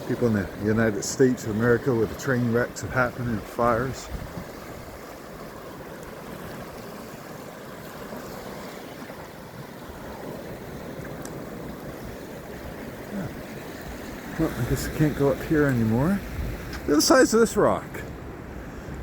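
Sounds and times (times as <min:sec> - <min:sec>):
ocean surf rushing: 0:00.0 - 0:19.0
wind on microphone: 0:03.0 - 0:07.4, 0:08.0 - 0:17.0.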